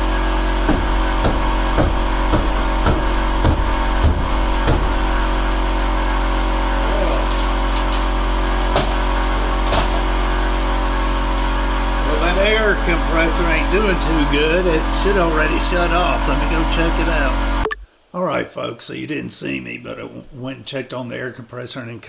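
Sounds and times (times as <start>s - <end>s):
air compressor running: 0.0s - 17.8s
sharp knocks: 0.6s - 5.3s.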